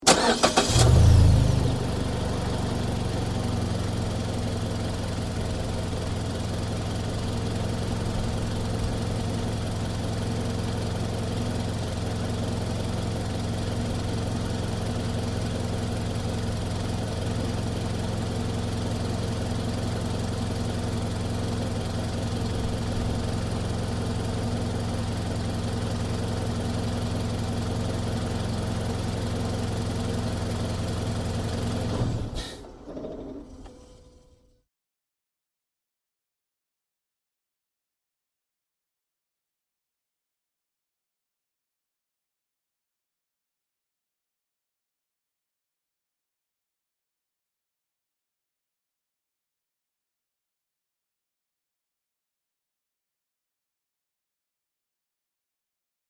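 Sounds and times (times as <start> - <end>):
car engine starting and idling: 0.0 - 34.6.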